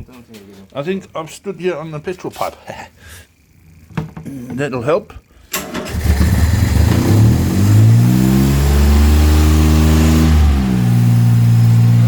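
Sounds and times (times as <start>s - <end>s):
car engine starting and revving: 5.6s - 12.0s.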